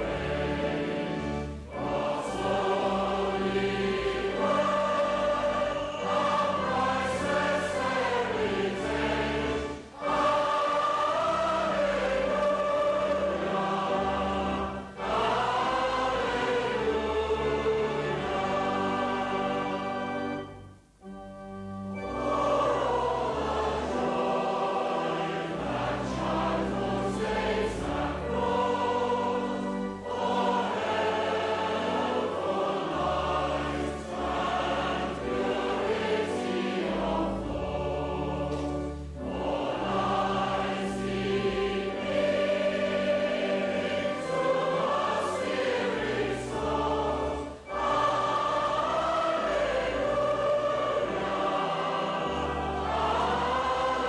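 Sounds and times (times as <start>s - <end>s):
choir and congregation singing a hymn: 0.0s - 54.0s
held low accompanying notes: 0.0s - 54.0s.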